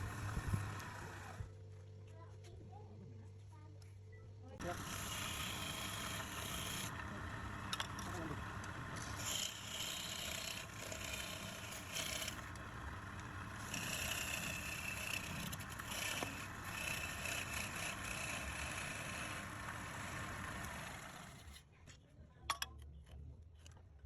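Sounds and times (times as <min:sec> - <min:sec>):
wood lathe motor hum: 0:00.0 - 0:01.5, 0:04.6 - 0:21.6
turning tool scraping wood: 0:04.6 - 0:21.6.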